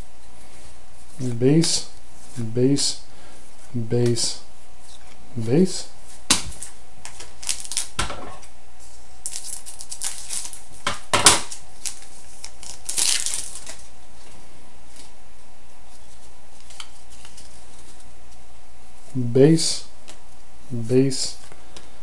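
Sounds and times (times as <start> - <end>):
wrapper crinkling and tearing: 6.5 - 8.0, 9.2 - 10.8, 11.4 - 13.9
cards being handled: 11.4 - 15.2, 15.9 - 18.4.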